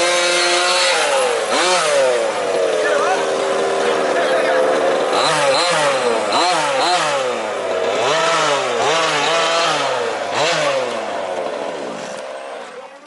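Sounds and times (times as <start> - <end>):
small two-stroke engines revving: 0.0 - 13.0.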